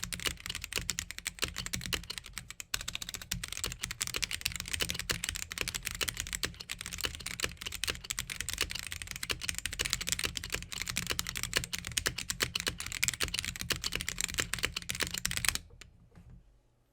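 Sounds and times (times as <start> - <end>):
fast mechanical keyboard typing: 0.0 - 15.8.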